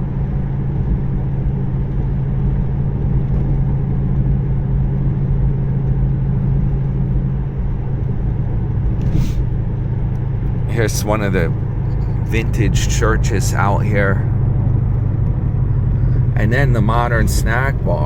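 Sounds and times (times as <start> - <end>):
car engine drone: 0.0 - 18.0
road noise: 0.0 - 18.0.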